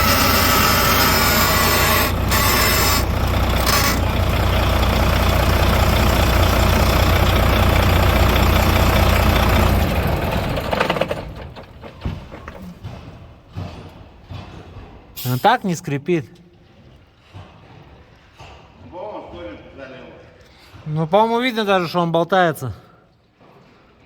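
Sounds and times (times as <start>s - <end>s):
diesel engine humming and hissing: 0.0s - 11.7s.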